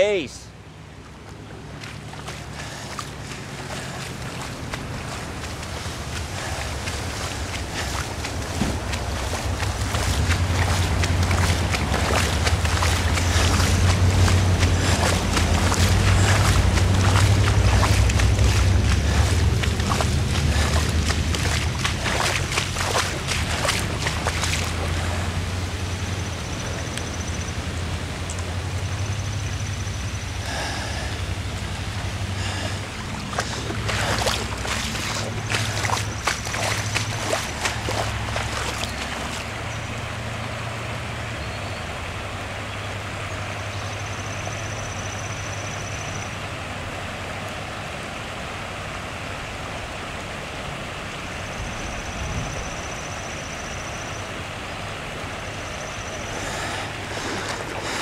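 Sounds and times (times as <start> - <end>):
floodwater rushing: 0.0 - 58.0
wind buffeting microphone: 2.0 - 26.9, 30.8 - 39.6.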